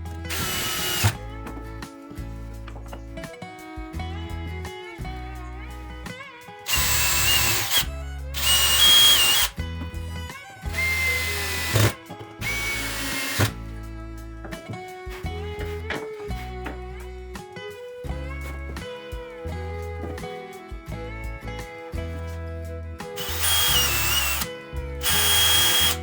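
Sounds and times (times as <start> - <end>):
guitar background music: 0.0 - 26.0
power drill bursts: 0.3 - 1.2, 6.7 - 9.5, 10.7 - 13.6, 23.2 - 26.0.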